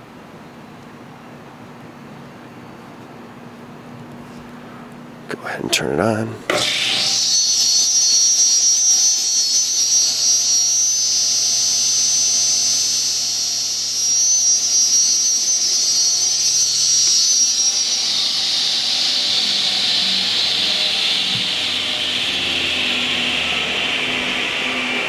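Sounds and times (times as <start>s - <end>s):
table saw whining: 6.5s - 25.0s.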